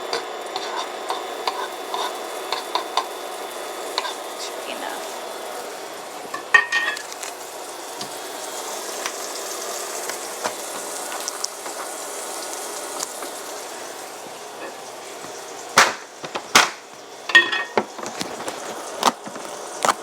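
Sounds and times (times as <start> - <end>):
butter sizzling in frying pan: 0.0 - 20.0
loud sharp knocks: 15.8 - 16.8.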